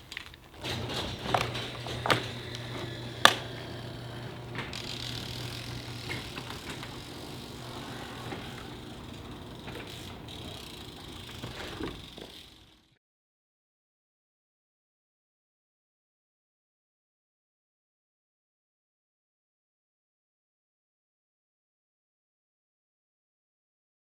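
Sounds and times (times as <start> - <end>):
bicycle sharp click: 0.0 - 7.4, 8.2 - 12.7
bicycle riding hiss: 2.9 - 13.0
faint bicycle ticks: 8.6 - 12.9.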